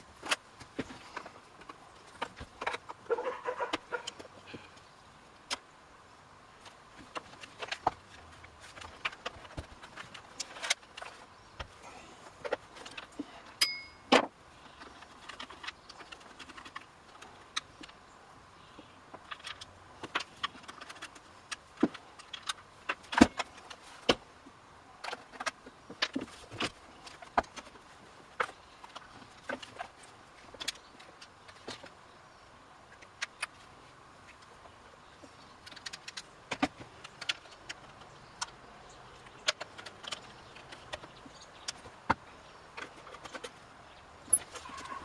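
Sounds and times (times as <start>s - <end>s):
tools and parts clinking: 12.3s - 18.0s, 44.2s - 45.0s.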